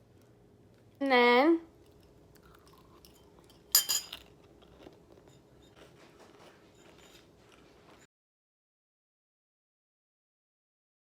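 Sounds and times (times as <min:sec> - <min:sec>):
faint crunching and chewing: 0:00.1 - 0:01.0, 0:01.7 - 0:08.1.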